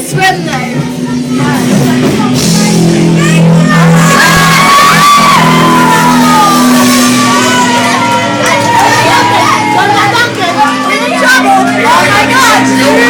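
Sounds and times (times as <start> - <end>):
loud music: 0.0 - 13.0
people shouting: 3.2 - 13.0.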